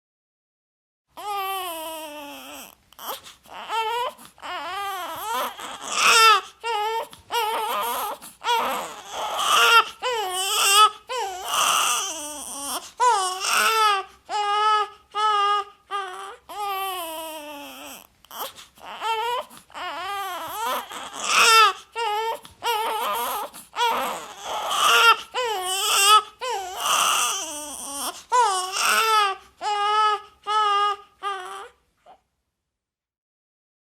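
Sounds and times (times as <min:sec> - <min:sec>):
baby crying: 0:01.2 - 0:32.2.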